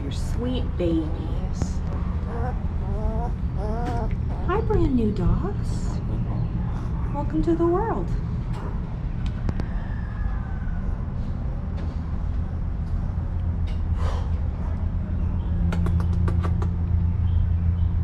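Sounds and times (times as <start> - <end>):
low mechanical hum: 0.0 - 18.0.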